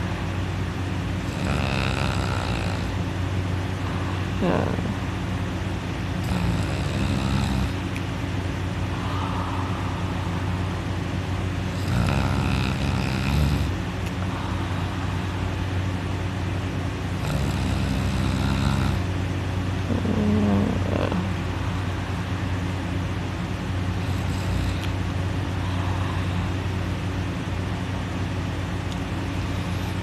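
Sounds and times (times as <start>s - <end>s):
steady low hum: 0.0s - 30.0s
person snoring loudly: 1.2s - 3.0s, 6.2s - 7.8s, 11.7s - 13.8s, 17.1s - 19.1s, 19.9s - 21.3s, 24.0s - 24.9s.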